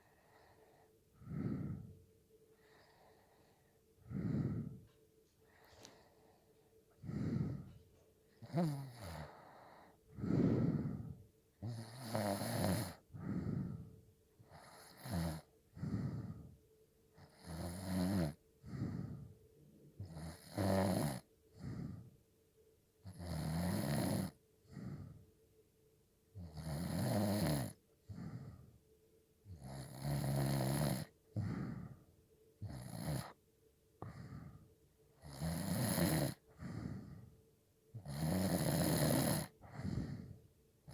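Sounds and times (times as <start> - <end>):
person snoring: 1.2 - 1.9, 4.0 - 4.9, 7.0 - 7.8, 8.4 - 13.9, 14.5 - 16.5, 17.2 - 19.3, 20.0 - 22.0, 23.1 - 25.1, 26.4 - 28.4, 29.5 - 32.0, 32.6 - 33.4, 35.2 - 37.2, 38.0 - 40.9.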